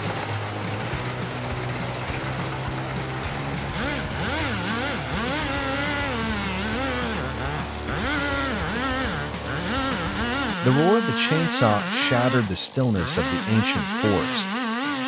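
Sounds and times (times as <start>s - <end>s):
engine revving: 0.0s - 15.0s
steady low hum: 3.7s - 15.0s.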